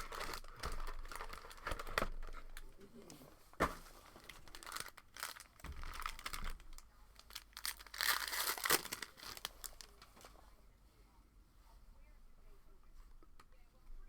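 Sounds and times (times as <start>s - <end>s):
plastic packaging crinkling and tearing: 0.0s - 10.3s.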